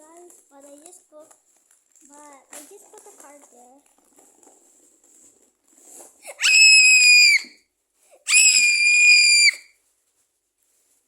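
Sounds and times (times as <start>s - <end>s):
high-pitched shrieks: 8.3s - 9.7s.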